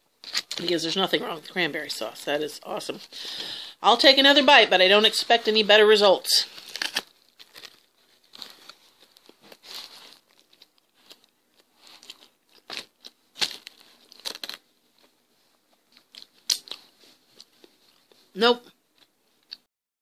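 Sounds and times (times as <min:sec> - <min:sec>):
person chewing a sandwich: 0:06.6 - 0:19.7.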